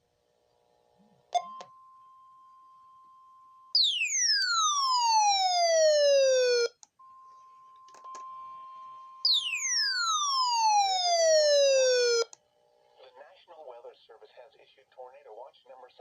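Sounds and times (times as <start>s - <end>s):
faint steady electronic tone: 0.1s - 13.1s
loud tone sliding down in pitch: 9.3s - 12.3s.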